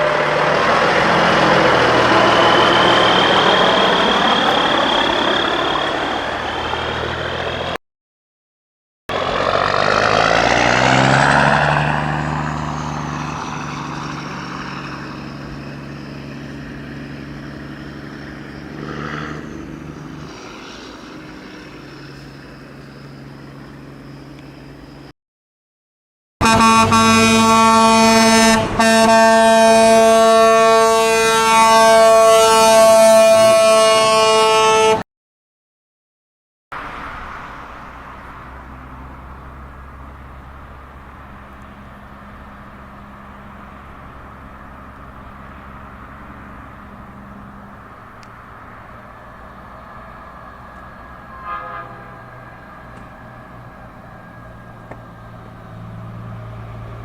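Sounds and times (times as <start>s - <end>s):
road vehicle rumble: 0.0s - 7.8s, 9.1s - 25.1s, 26.4s - 35.0s, 36.7s - 57.0s
truck air horn blast: 26.4s - 35.0s, 51.2s - 52.7s.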